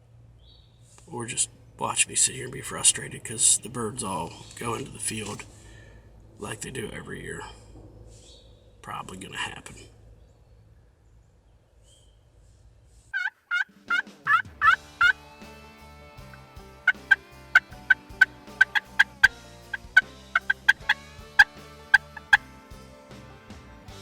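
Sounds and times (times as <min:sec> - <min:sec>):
wild turkey gobbling: 0:13.1 - 0:15.2, 0:16.9 - 0:22.4
plucked guitar music: 0:14.6 - 0:24.0.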